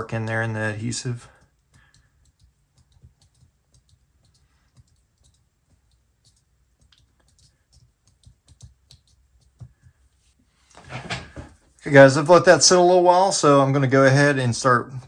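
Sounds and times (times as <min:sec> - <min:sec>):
laptop clicks and taps: 0:01.4 - 0:10.0.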